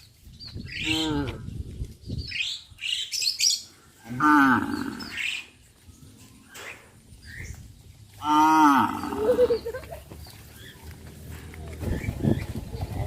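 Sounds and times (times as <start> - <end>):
birds chirping: 0.0 - 13.0
cow mooing: 4.1 - 5.2, 8.2 - 9.2.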